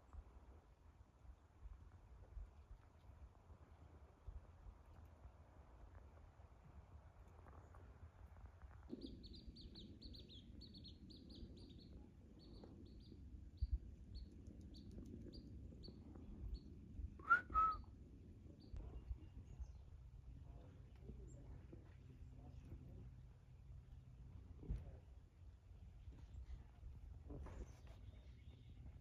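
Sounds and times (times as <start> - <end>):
faint wind rumble: 0.0 - 29.0
small bird chirping: 8.8 - 16.7.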